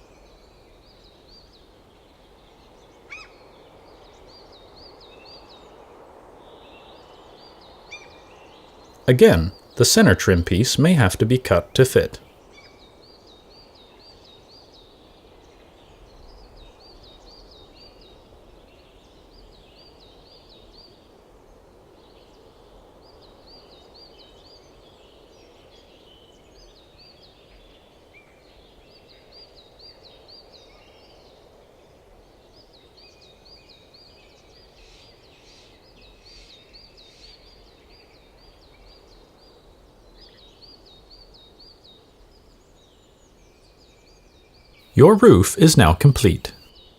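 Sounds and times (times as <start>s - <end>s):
faint steady background hiss: 0.0s - 37.7s, 45.0s - 46.6s
birds chirping: 9.1s - 12.2s.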